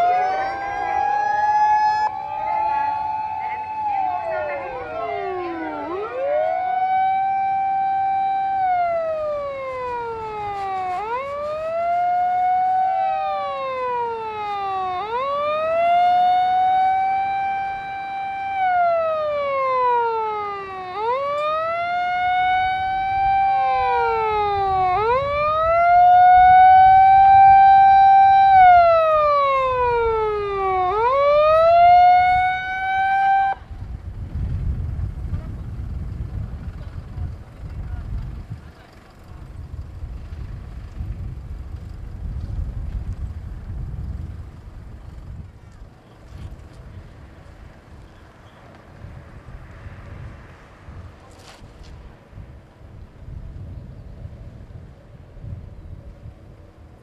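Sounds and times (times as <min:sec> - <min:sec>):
second siren: 0:00.0 - 0:33.9
fire engine siren wailing: 0:00.0 - 0:34.9
engine rumble: 0:00.0 - 0:57.0.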